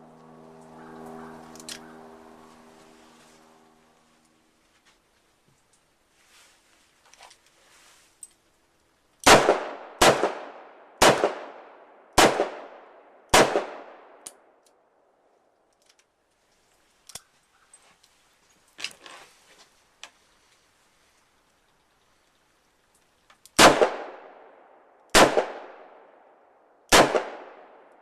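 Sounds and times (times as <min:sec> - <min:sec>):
faint clicks: 0:21.2 - 0:23.6.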